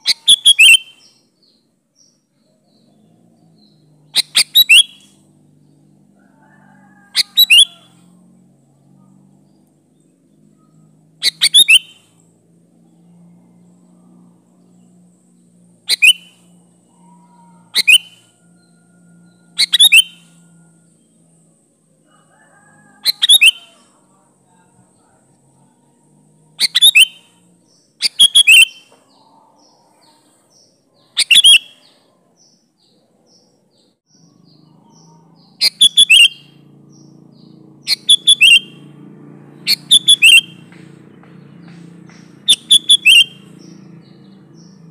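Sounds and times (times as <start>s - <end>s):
bulbul singing: 0.0s - 44.9s
faint low hum: 7.7s - 28.1s.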